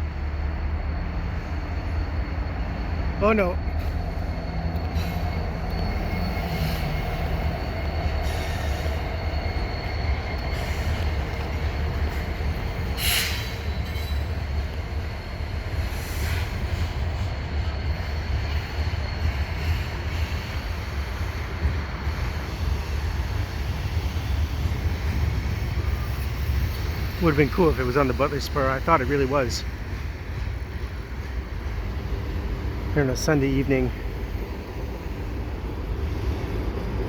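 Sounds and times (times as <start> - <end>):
train wheels rumbling on rail: 0.0 - 37.0
sharp wheel screech: 13.0 - 14.3.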